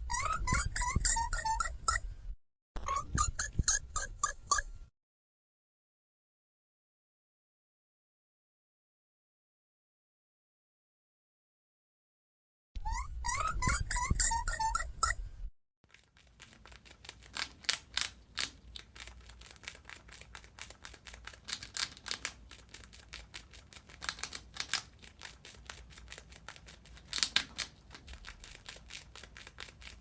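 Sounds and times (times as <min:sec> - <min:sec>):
mouse gnawing: 0:15.9 - 0:30.0.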